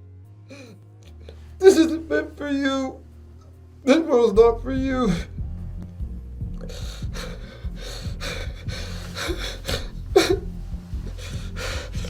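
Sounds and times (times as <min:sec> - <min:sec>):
man gasping and breathing hard: 0:04.9 - 0:05.4, 0:06.5 - 0:12.0.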